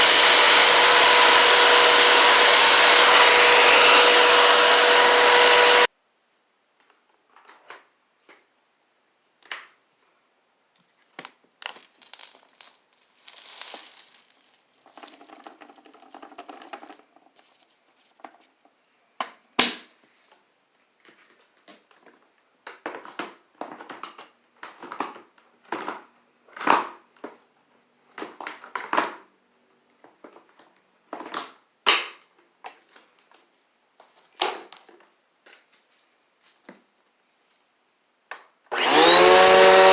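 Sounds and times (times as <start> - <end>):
vacuum cleaner cutting off: 0.0 - 5.9, 38.7 - 39.9
something crunchy being crushed: 11.6 - 18.5.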